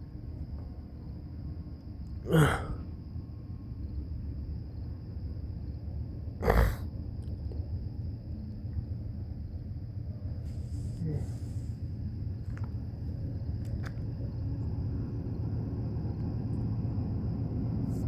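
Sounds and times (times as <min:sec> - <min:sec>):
low background rumble: 0:00.0 - 0:18.0
person sneezing: 0:02.3 - 0:02.8, 0:06.4 - 0:06.9, 0:11.0 - 0:11.5.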